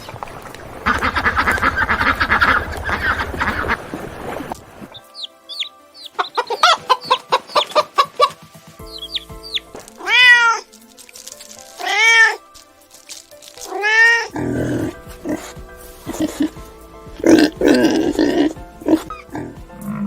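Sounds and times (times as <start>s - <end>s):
faint background music: 0.0s - 20.0s
cat meowing: 10.0s - 10.6s, 11.8s - 12.4s.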